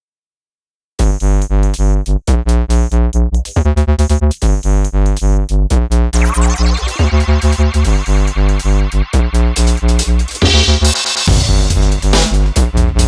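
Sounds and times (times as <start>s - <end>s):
electronic music with drum-machine beat: 1.0s - 13.0s
rising synth sweep: 6.2s - 11.9s.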